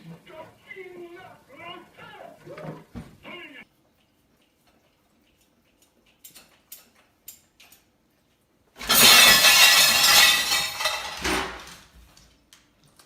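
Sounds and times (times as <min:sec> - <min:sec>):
loud crash with shattering: 0:08.8 - 0:11.8.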